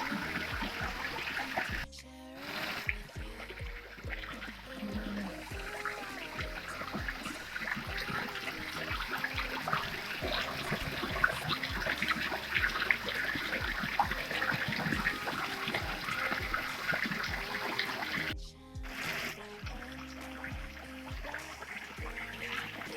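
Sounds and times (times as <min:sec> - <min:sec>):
stream water flowing: 0:00.0 - 0:22.9.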